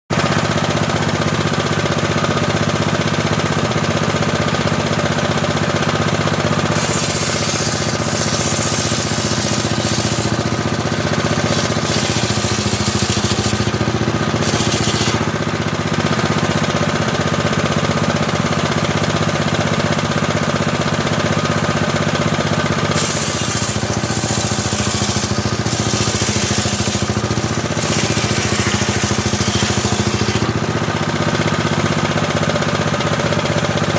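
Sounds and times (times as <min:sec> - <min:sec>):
table saw running: 0:00.1 - 0:33.9
saw blade ripping through wood: 0:06.4 - 0:15.4, 0:22.8 - 0:31.7.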